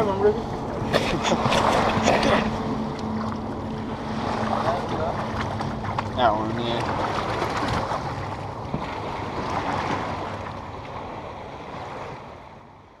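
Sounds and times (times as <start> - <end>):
lapping water: 0.8 - 3.4.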